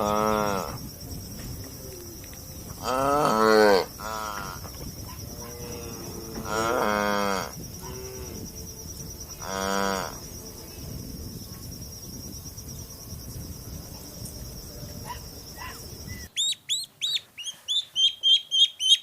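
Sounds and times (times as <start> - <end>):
cow mooing: 0.0 - 0.8, 2.8 - 8.5, 9.4 - 10.2.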